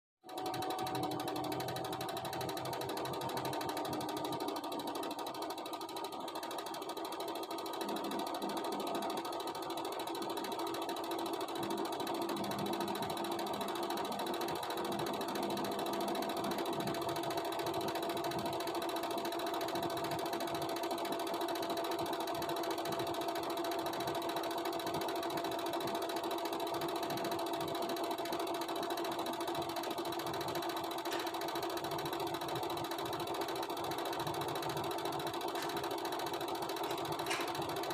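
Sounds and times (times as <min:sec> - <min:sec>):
washing machine whine and rattle: 0:00.2 - 0:37.9.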